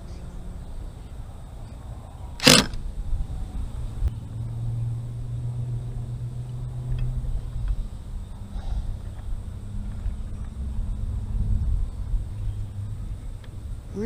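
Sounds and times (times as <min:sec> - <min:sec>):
low rumble: 0:00.0 - 0:14.0
low steady hum: 0:00.0 - 0:14.0
sharp knock: 0:02.4 - 0:02.8.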